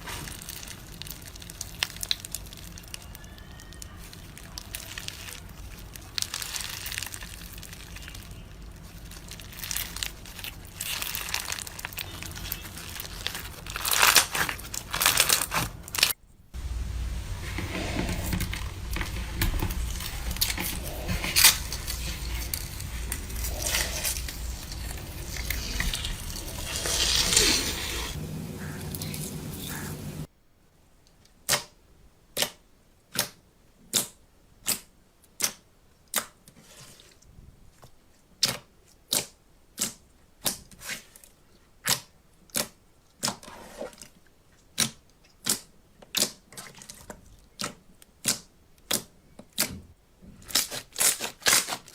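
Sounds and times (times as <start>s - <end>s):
slime crackling and crunching: 0.0s - 29.8s, 50.4s - 51.9s
low hum: 15.9s - 30.3s.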